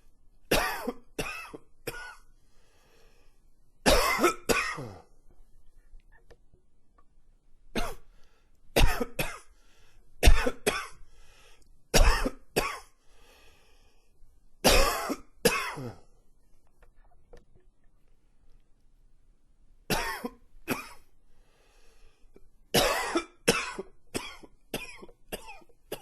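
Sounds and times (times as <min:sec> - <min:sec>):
man coughing: 0:03.9 - 0:05.1, 0:12.0 - 0:12.9, 0:14.7 - 0:16.1, 0:19.9 - 0:21.0, 0:22.8 - 0:26.0.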